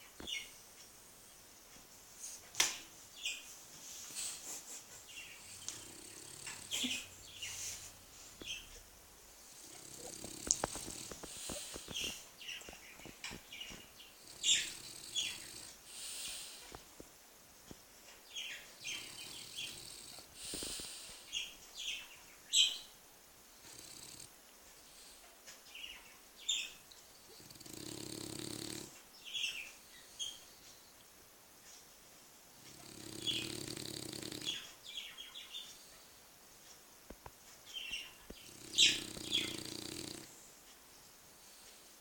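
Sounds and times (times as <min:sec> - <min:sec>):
dog snoring: 0:04.1 - 0:08.6, 0:09.4 - 0:16.9, 0:18.8 - 0:21.4, 0:23.5 - 0:24.4, 0:27.2 - 0:29.0, 0:32.6 - 0:35.0, 0:37.9 - 0:40.5.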